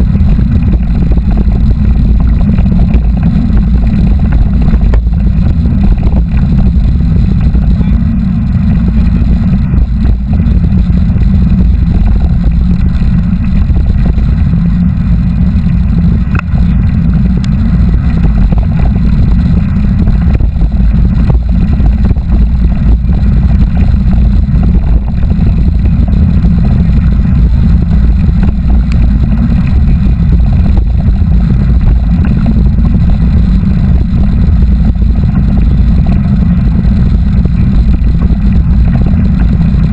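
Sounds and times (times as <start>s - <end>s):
wind rumble on microphone: 0.0s - 39.9s.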